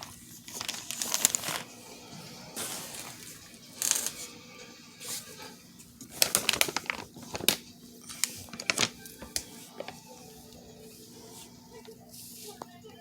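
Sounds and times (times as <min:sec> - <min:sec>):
packaging crinkling and rustling: 0:00.0 - 0:01.7, 0:06.0 - 0:10.2.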